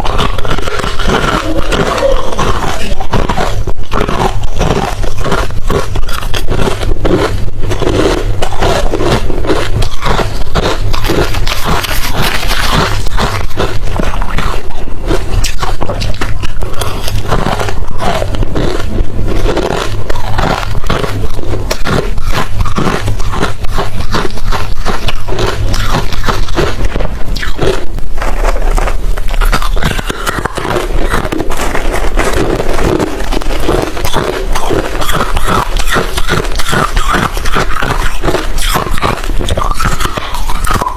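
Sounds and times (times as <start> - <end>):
chewing crunchy ice: 0.0 - 40.9.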